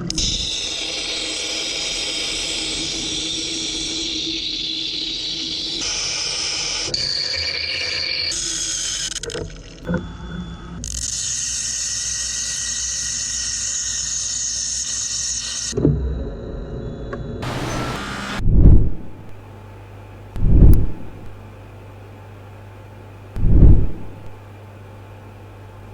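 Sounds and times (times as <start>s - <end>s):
hiss of flushing water: 17.4s - 18.4s.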